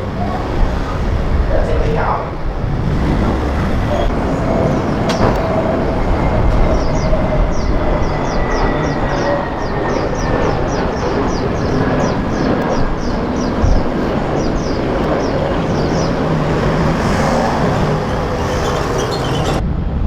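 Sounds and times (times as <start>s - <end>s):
aircraft engines running: 0.0s - 20.0s.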